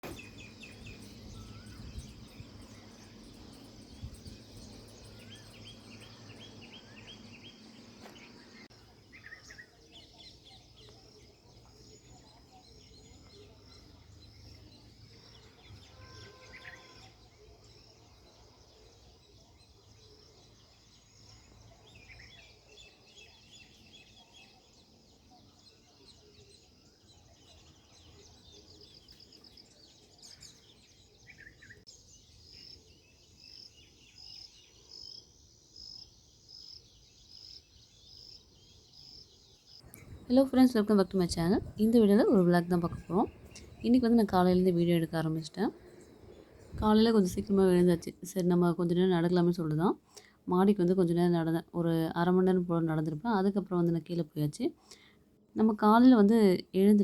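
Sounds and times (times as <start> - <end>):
small birds chirping and twittering: 0.0 - 57.0.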